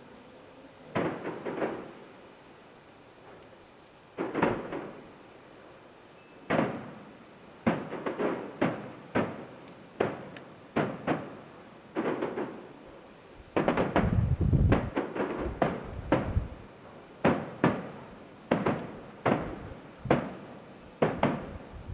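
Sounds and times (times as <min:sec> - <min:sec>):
distant firework bangs with echo: 0:01.0 - 0:02.0, 0:04.2 - 0:05.1, 0:06.5 - 0:12.8, 0:13.6 - 0:16.6, 0:17.2 - 0:21.9.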